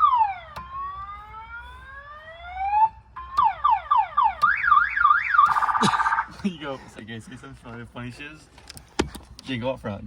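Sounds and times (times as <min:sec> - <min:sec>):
electronic horn siren: 0:00.0 - 0:06.3.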